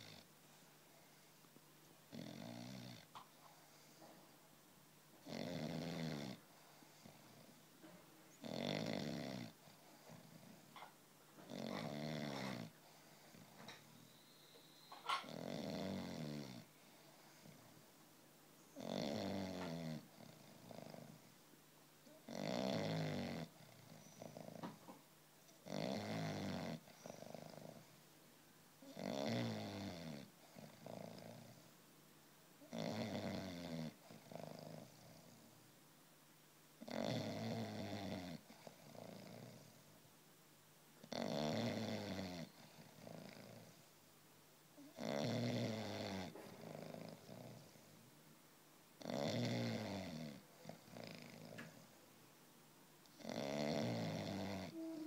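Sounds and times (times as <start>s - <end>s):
puppy snoring: 0.0s - 0.3s, 2.1s - 4.2s, 5.2s - 7.6s, 8.3s - 17.8s, 18.7s - 21.4s, 22.0s - 28.0s, 28.8s - 31.7s, 32.6s - 35.6s, 36.8s - 39.9s, 41.0s - 43.9s, 44.8s - 48.1s, 49.0s - 52.0s, 53.1s - 55.0s
soft breathing: 3.2s - 4.5s.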